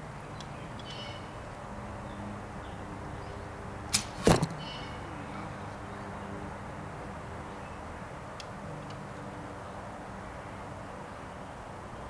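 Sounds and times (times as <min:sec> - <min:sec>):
bow string snap: 0:03.9 - 0:04.6
arrow thumping into target: 0:03.9 - 0:04.7.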